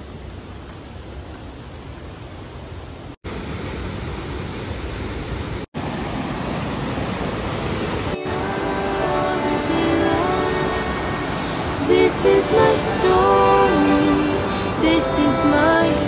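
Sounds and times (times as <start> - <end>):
waterfall rushing: 3.3 - 16.0
music: 8.2 - 11.1, 11.8 - 16.0.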